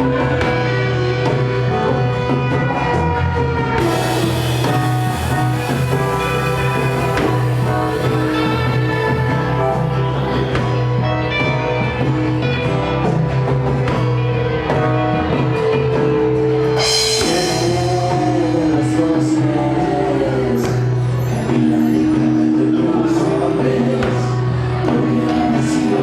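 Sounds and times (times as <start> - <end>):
rock band playing: 0.0 - 26.0
cymbal crash: 3.8 - 10.5.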